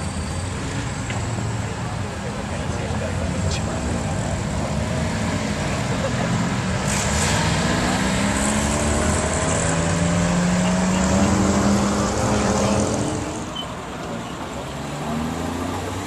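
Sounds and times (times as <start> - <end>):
sports car engine accelerating: 2.9 - 13.5.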